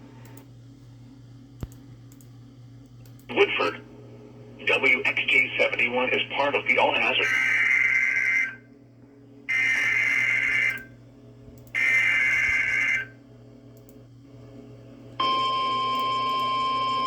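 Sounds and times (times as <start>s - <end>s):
steady warning alarm tone: 7.2s - 8.7s, 9.5s - 10.9s, 11.7s - 13.2s, 15.2s - 17.0s.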